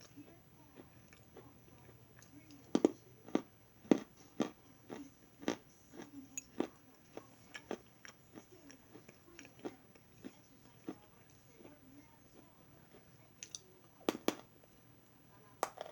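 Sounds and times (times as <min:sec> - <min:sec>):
person chewing crunchy food: 0:00.0 - 0:11.7.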